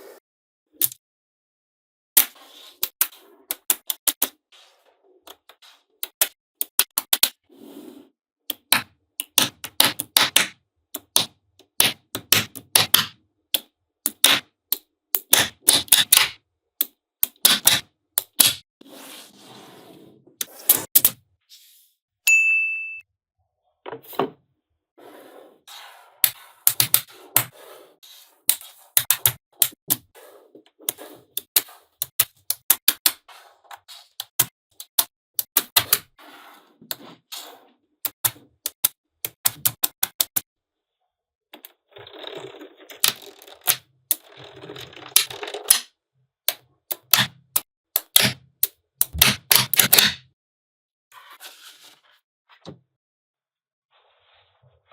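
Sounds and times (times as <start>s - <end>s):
bell-like ding: 22.3s - 23.1s.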